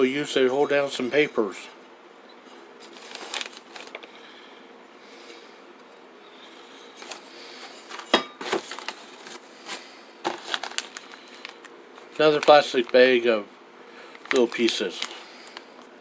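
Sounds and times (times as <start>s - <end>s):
packaging rustling: 2.8s - 4.1s, 7.0s - 13.2s, 14.0s - 16.0s.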